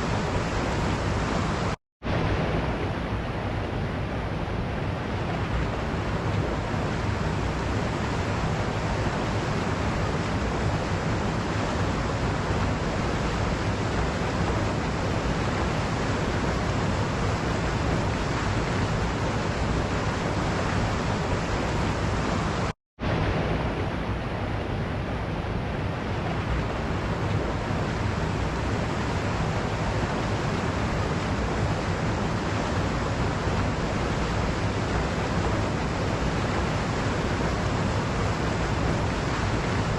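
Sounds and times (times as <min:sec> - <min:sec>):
waterfall rushing: 0:00.0 - 0:03.5, 0:26.4 - 0:39.9.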